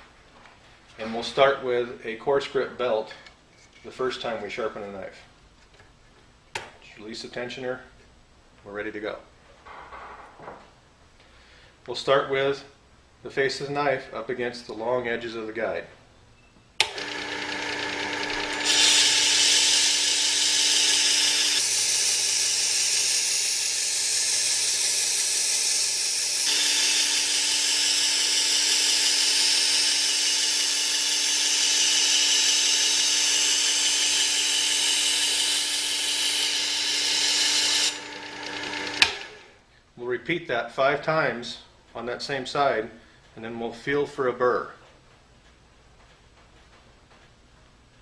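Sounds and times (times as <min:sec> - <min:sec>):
sharpener motor hum: 0:16.8 - 0:39.5
knife grinding on abrasive belt: 0:17.0 - 0:39.3.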